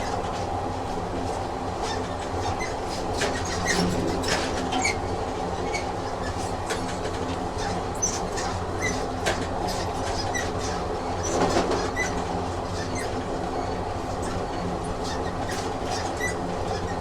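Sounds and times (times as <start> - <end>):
train rumbling on rails: 0.0 - 17.0
high wheel squeaks: 7.6 - 17.0.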